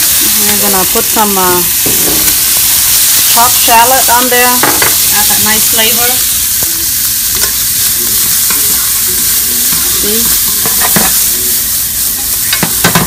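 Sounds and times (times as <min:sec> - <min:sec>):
bacon sizzling in a frying pan: 0:00.0 - 0:13.0
utensil knocking: 0:04.6 - 0:05.0, 0:12.5 - 0:13.0.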